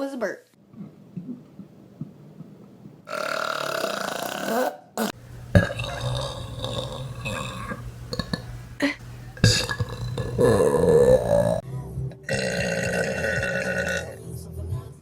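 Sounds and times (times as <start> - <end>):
people burping: 3.1 - 11.6, 12.3 - 14.2
low hum: 5.2 - 11.6.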